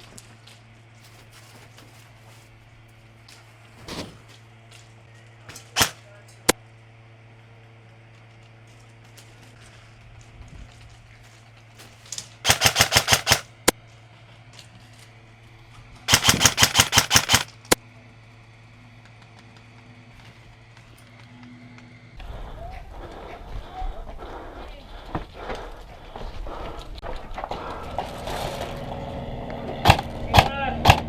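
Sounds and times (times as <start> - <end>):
airsoft rifle firing: 5.5 - 6.2, 12.4 - 13.7, 16.1 - 17.8.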